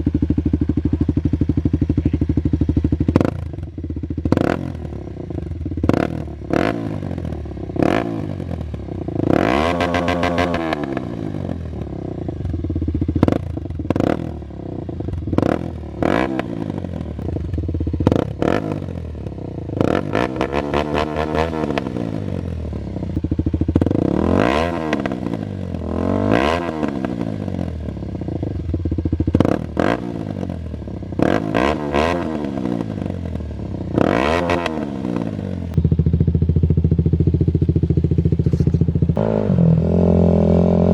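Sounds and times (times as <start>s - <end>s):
motorcycle engine throttle blips: 22.7s - 40.9s.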